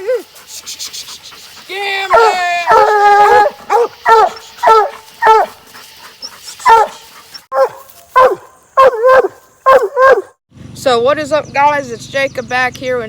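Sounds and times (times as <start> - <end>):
dog barking: 2.1 - 5.6, 6.6 - 10.4.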